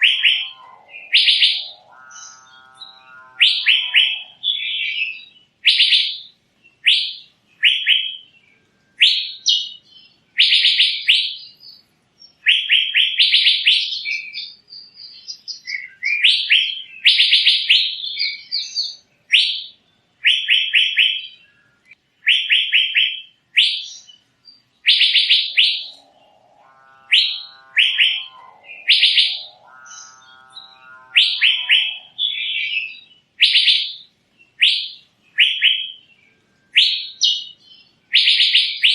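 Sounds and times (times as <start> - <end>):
bird calling rapid notes: 0.0 - 6.1, 24.9 - 34.0, 34.6 - 36.0
lower faint bird call: 0.0 - 38.9.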